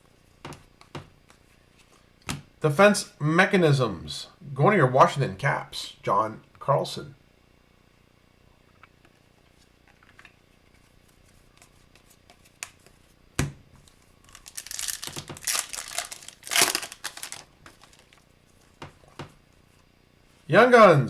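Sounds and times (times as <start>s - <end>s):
foil wrapper crinkling and tearing: 14.2s - 18.2s.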